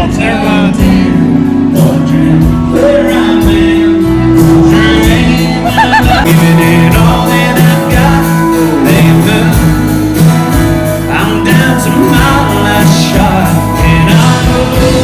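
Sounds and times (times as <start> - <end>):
country band playing: 0.0 - 15.0
man singing: 0.0 - 15.0.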